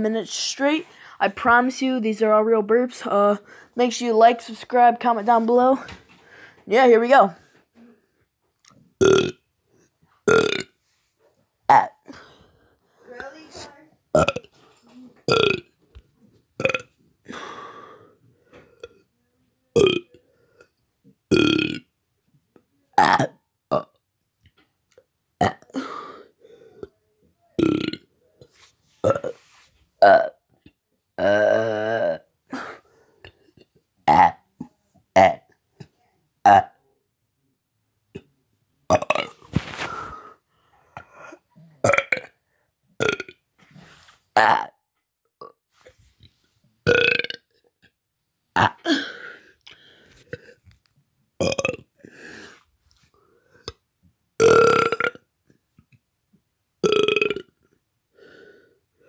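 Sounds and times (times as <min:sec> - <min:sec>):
person burping: 0:09.0 - 0:09.4, 0:10.3 - 0:10.8, 0:11.7 - 0:12.2, 0:14.1 - 0:14.6, 0:15.3 - 0:15.7, 0:16.6 - 0:17.9, 0:18.5 - 0:19.0, 0:19.7 - 0:20.7, 0:21.3 - 0:21.9, 0:23.0 - 0:24.0, 0:25.4 - 0:26.2, 0:27.6 - 0:28.1, 0:29.0 - 0:29.4, 0:30.0 - 0:30.4, 0:31.2 - 0:32.8, 0:33.5 - 0:34.5, 0:35.2 - 0:35.5, 0:36.4 - 0:36.8, 0:38.9 - 0:40.1, 0:41.0 - 0:42.4, 0:43.0 - 0:43.4, 0:44.4 - 0:44.8, 0:46.9 - 0:47.5, 0:48.6 - 0:49.4, 0:51.4 - 0:52.2, 0:54.4 - 0:55.3, 0:56.8 - 0:57.6.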